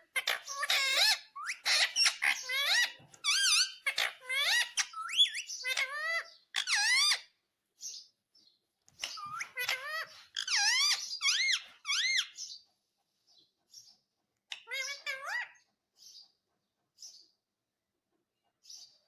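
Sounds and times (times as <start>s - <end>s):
parakeet shrill squeaky calls: 0.0s - 8.1s, 9.0s - 12.6s, 14.5s - 16.2s.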